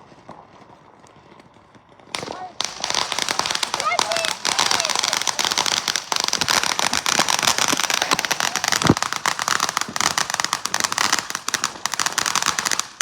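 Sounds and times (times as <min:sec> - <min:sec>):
fireworks crackling and popping: 0:00.0 - 0:13.0
heavy firework bang: 0:02.2 - 0:10.2.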